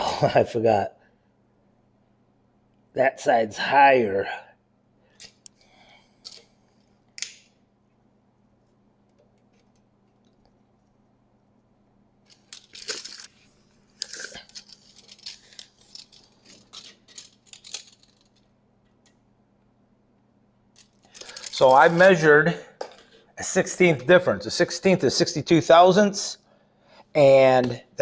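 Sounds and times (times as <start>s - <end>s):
faint low hum: 0.0s - 28.0s
rustling and scraping handling noises: 12.3s - 18.4s.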